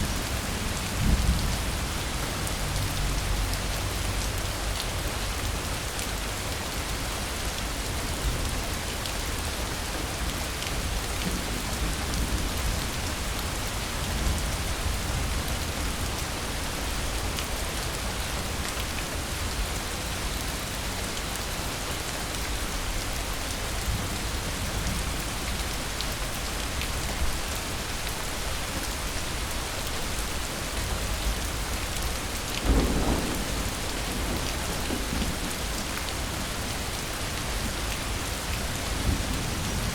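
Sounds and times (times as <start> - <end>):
steady rain falling: 0.0 - 39.9
thunder rumbling: 32.6 - 36.4.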